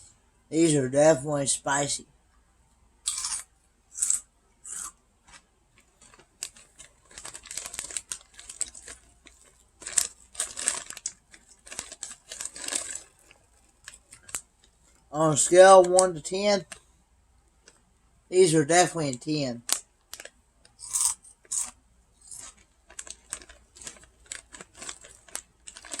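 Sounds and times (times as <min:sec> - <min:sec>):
crunching of food being eaten: 0:03.0 - 0:15.1, 0:19.6 - 0:26.0
foil snack bag crinkling: 0:04.0 - 0:16.9, 0:18.4 - 0:26.0.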